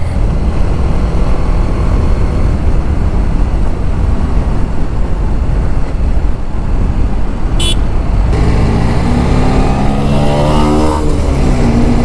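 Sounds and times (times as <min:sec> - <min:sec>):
wind rumble on microphone: 0:00.0 - 0:12.0
short high horn beep: 0:07.6 - 0:07.8.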